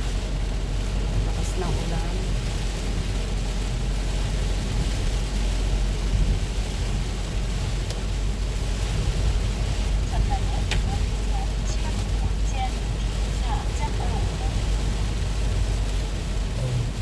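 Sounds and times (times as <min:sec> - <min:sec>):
heavy rain falling: 0:00.0 - 0:17.0.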